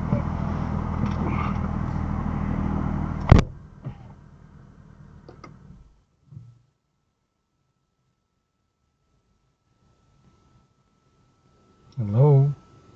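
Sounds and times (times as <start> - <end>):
car engine running: 0.0 - 6.6
sharp loud click: 3.2 - 3.6
soft thump: 3.3 - 4.1.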